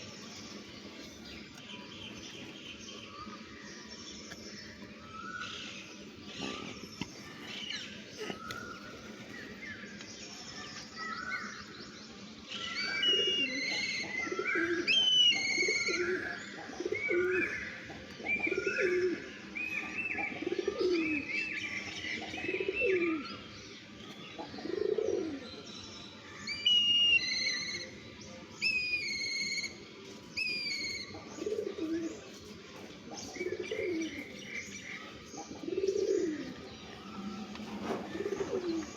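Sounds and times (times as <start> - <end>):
low bird calls: 33.2 - 38.9.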